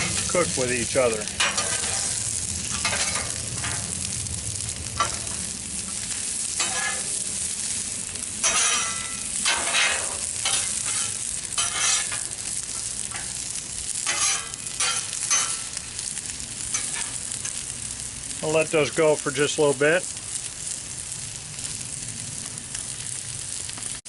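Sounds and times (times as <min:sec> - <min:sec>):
vegetables sizzling in oil: 0:00.0 - 0:24.0
metal spatulas scraping griddle: 0:01.3 - 0:03.9, 0:05.0 - 0:05.5, 0:06.6 - 0:07.2, 0:08.4 - 0:13.4, 0:14.0 - 0:15.8, 0:16.7 - 0:17.6.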